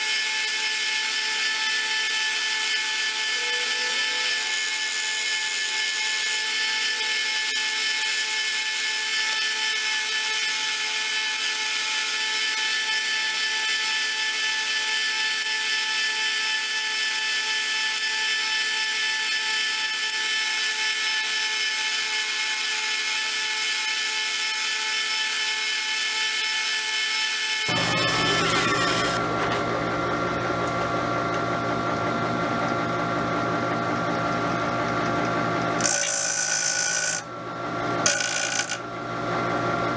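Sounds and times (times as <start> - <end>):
power tool high whine: 0.0 - 29.3, 35.8 - 37.3, 38.0 - 38.9.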